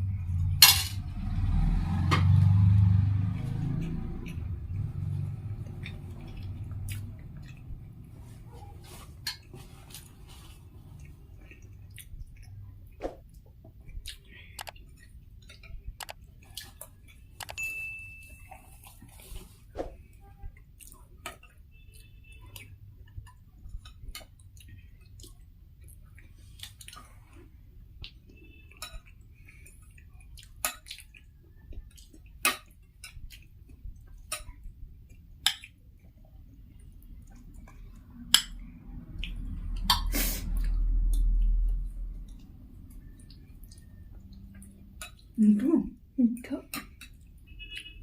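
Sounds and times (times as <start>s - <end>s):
cutlery clinking on plates: 0.6s - 1.0s
chewing: 3.2s - 17.6s, 18.4s - 45.4s.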